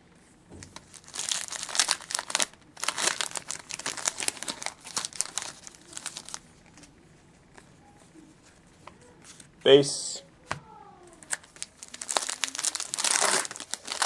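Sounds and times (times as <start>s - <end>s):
wrapper crinkling and tearing: 0.8s - 6.9s, 11.2s - 14.0s.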